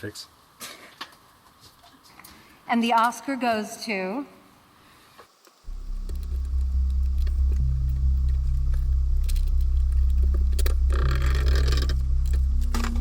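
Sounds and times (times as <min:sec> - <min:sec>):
deep synthesizer bass note: 0:05.7 - 0:13.0
high sustained synth notes: 0:05.7 - 0:13.0.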